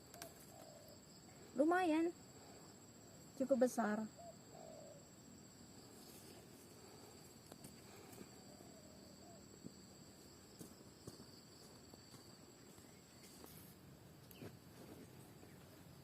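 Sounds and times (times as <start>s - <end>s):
insects trilling: 0.0s - 16.0s.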